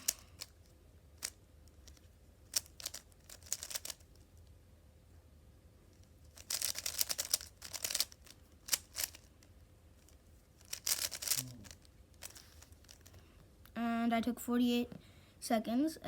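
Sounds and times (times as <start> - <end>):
rapid plastic cube clicking: 0.0 - 0.6, 1.2 - 4.2, 6.3 - 9.3, 10.6 - 13.1.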